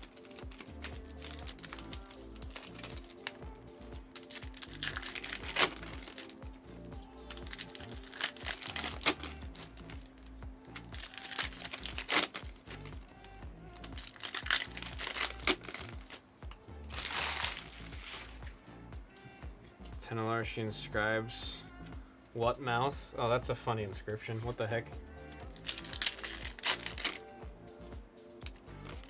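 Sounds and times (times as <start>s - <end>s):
foil wrappers crinkling and tearing: 0.0s - 3.4s, 4.0s - 6.6s, 7.2s - 10.1s, 10.7s - 16.2s, 16.9s - 18.6s, 25.3s - 27.4s, 28.4s - 29.0s
background music: 0.0s - 29.0s
cards clicking: 4.1s - 6.4s, 7.3s - 10.0s, 10.8s - 13.0s, 13.8s - 16.2s, 25.4s - 27.3s.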